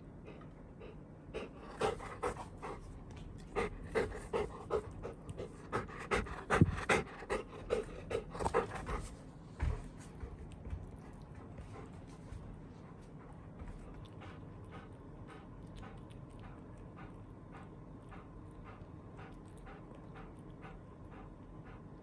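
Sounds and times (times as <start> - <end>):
dog panting: 0.0 - 22.0.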